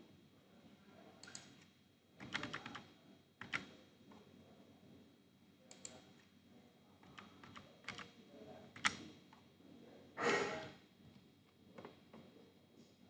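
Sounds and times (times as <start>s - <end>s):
keyboard and mouse clicks: 1.2s - 1.6s, 2.2s - 2.8s, 3.4s - 3.7s, 7.0s - 8.1s, 8.8s - 9.0s.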